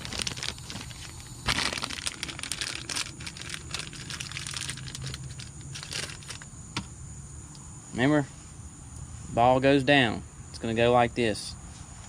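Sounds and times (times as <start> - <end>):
plastic packaging crinkling: 0.0 - 6.4.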